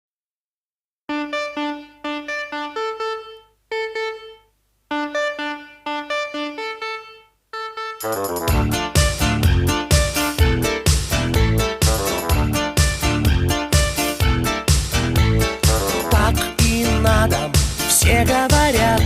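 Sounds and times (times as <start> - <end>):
electronic keyboard melody: 1.1 - 19.0
band with drums: 8.0 - 19.0.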